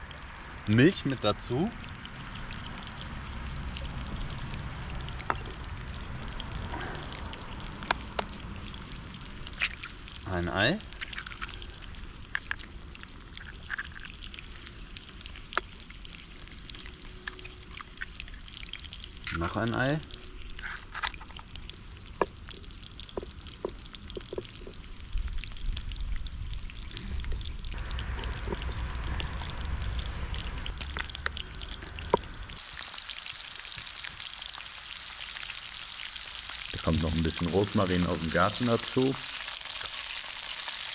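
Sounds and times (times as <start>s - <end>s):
campfire crackling: 0.0s - 40.9s
steaks frying in a pan: 0.8s - 19.9s, 30.8s - 40.9s
low rumble: 25.0s - 32.6s
steaks sizzling in a pan: 32.6s - 40.9s.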